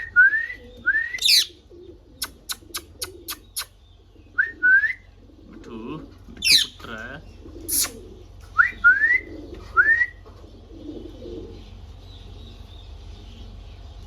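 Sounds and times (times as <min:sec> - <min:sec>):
parrot rising whistles: 0:00.0 - 0:01.5, 0:08.6 - 0:10.2.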